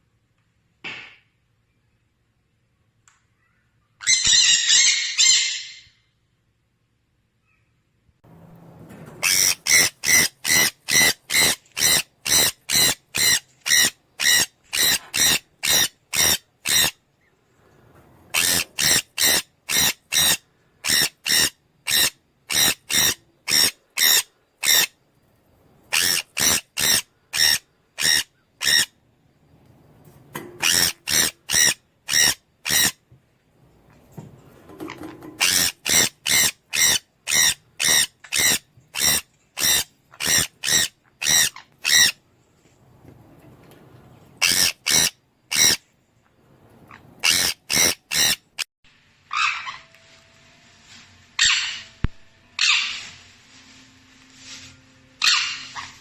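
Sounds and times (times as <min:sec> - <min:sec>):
parrot screeching calls: 0:04.0 - 0:06.0, 0:09.2 - 0:17.0, 0:18.3 - 0:24.9, 0:25.9 - 0:28.9, 0:30.6 - 0:33.0, 0:35.4 - 0:42.2, 0:44.4 - 0:45.8, 0:46.9 - 0:48.4, 0:49.3 - 0:49.9, 0:51.4 - 0:52.0, 0:52.6 - 0:53.1, 0:55.2 - 0:56.0.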